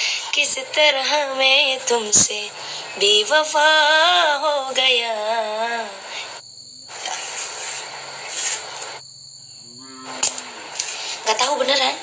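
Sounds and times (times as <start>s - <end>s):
woman singing with vibrato: 0.0s - 6.1s
hiss: 6.0s - 9.0s, 10.0s - 11.4s.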